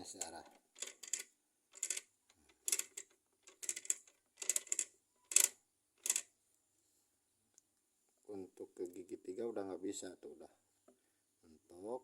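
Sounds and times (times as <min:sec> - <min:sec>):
gearbox clicking and rattling: 0:00.0 - 0:06.2.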